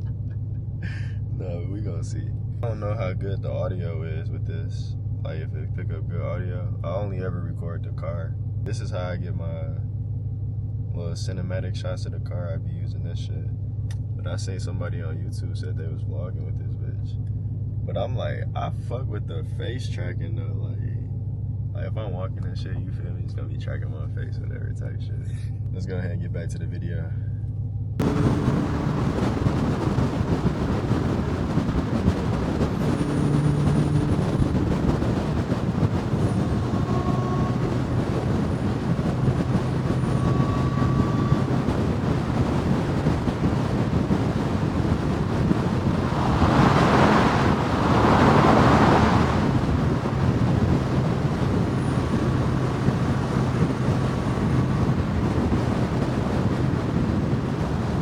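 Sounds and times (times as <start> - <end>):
low hum: 27.2 - 58.0
road traffic noise: 28.0 - 58.0
rush of passing vehicle: 28.0 - 58.0.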